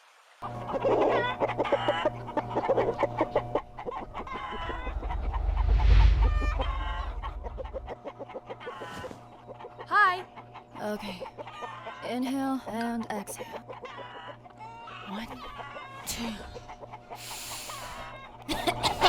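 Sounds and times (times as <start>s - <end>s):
chickens clucking and squawking: 0.4s - 19.0s
low rumble: 3.5s - 8.0s.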